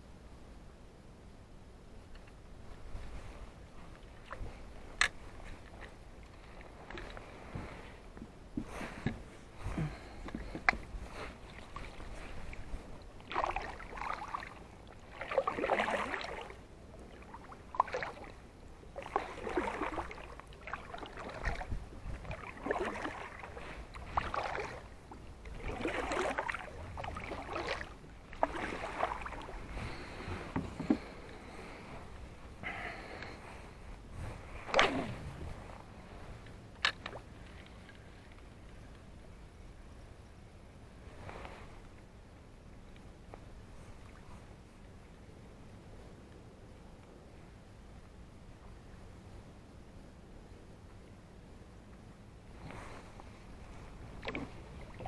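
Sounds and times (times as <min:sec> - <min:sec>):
kayak paddle splashing in water: 0:08.6 - 0:31.8, 0:34.5 - 0:35.6, 0:54.1 - 0:55.0.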